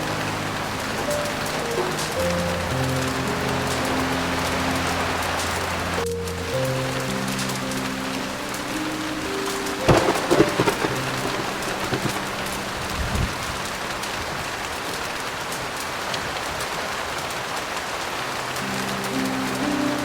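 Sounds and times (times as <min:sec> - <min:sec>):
soft piano notes: 0:00.0 - 0:14.4, 0:18.4 - 0:20.0
heavy rain: 0:00.0 - 0:20.0
thunder cracking and rumbling: 0:09.8 - 0:14.7.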